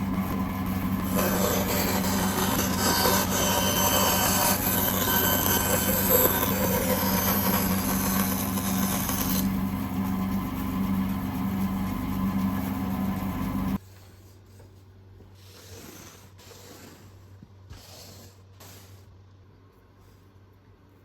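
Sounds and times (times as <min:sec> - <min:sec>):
lathe motor hum: 0:00.0 - 0:13.8
tool scraping wood: 0:01.0 - 0:10.1.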